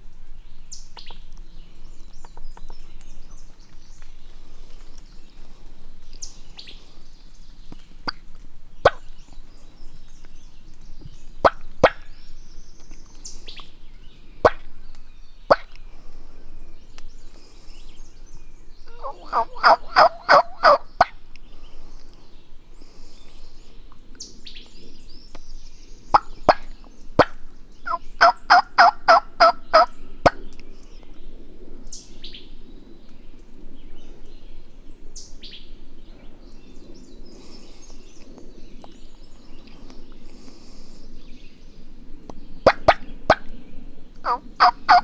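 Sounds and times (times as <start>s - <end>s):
songbird chirps: 0.0s - 45.0s
turkey yelps: 18.9s - 21.1s, 27.9s - 29.9s, 44.2s - 45.0s.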